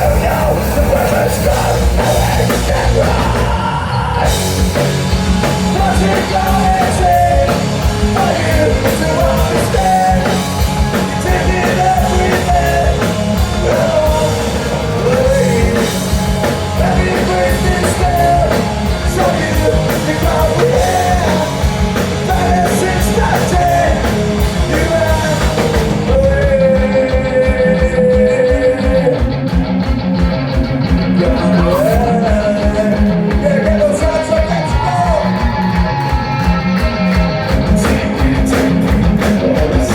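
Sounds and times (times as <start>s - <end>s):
singing lead vocal: 0.0s - 29.6s, 31.0s - 36.1s, 37.5s - 39.9s
drums: 0.0s - 39.9s
electric guitars: 0.0s - 39.9s.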